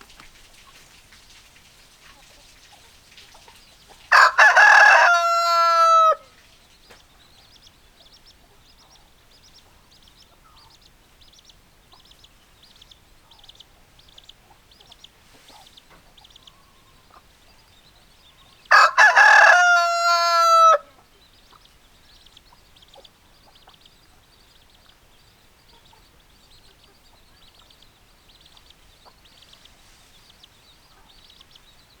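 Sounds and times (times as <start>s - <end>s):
rooster crowing: 4.1s - 6.3s, 18.7s - 20.9s.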